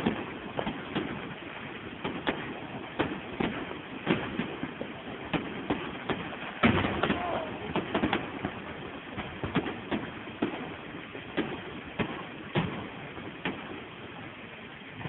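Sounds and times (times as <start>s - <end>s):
background noise: 0.0s - 15.0s
fireworks banging: 0.0s - 15.0s.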